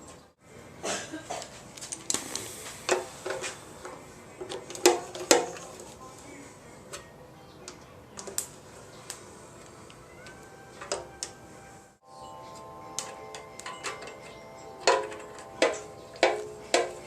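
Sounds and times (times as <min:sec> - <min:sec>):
metal tools and bolts clinking: 0:12.4 - 0:17.0.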